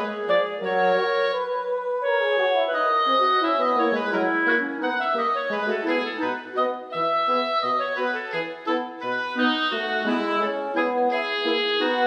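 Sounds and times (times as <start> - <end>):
instrumental background music: 2.8 - 12.0.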